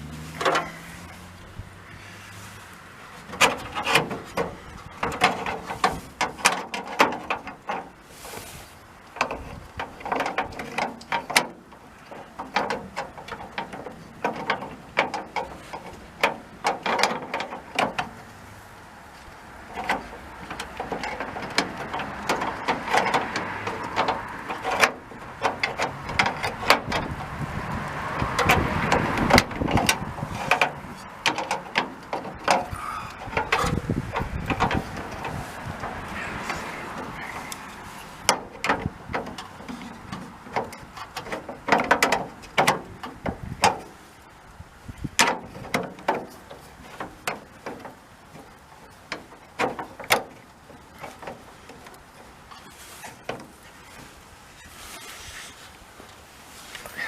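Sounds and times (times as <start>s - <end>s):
metal scraping: 0.0s - 11.4s, 12.0s - 43.0s.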